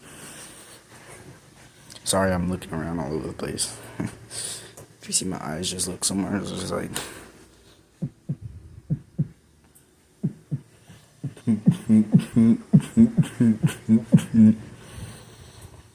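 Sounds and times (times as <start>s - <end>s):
beatboxed heartbeat: 8.0s - 9.4s, 10.2s - 14.6s.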